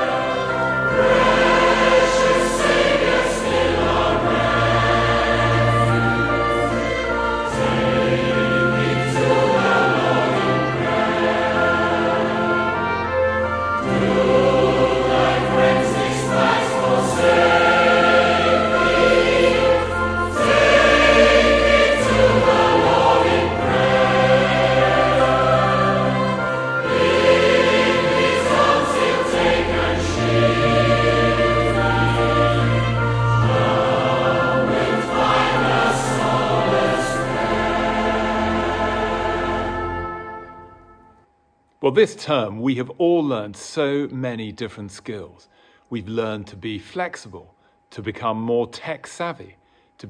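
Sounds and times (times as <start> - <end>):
choir singing a hymn: 0.0 - 41.1.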